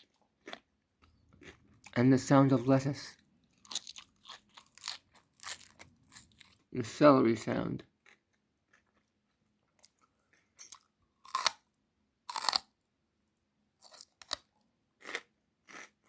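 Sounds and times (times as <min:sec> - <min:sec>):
celery crunching while chewed: 0:00.0 - 0:02.7, 0:03.5 - 0:06.7, 0:09.8 - 0:11.6, 0:12.3 - 0:12.7, 0:13.8 - 0:16.0.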